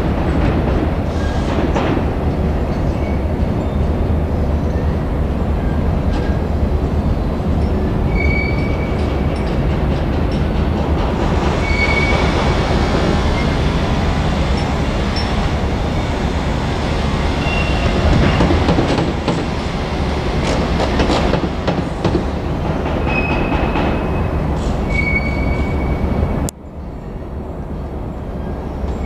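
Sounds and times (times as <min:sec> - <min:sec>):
rail-joint clicks: 0:00.0 - 0:26.6
freight train rumbling: 0:00.0 - 0:29.0
train wheel squeals: 0:01.0 - 0:01.8, 0:02.7 - 0:06.4, 0:07.6 - 0:19.6, 0:22.8 - 0:27.2.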